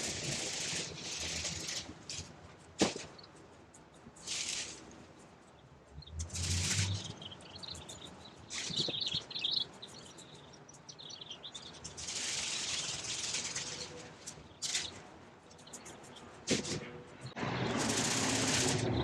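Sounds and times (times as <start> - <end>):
leafy branches rustling and swishing: 12.0 - 14.9.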